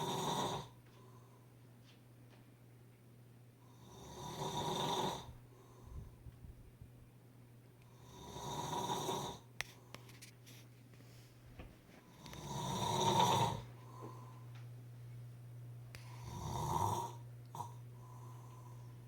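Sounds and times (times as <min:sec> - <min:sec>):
snoring: 0:00.0 - 0:00.8, 0:03.7 - 0:05.3, 0:08.0 - 0:09.5, 0:12.1 - 0:14.1, 0:16.2 - 0:18.8
faint low hum: 0:05.1 - 0:19.0.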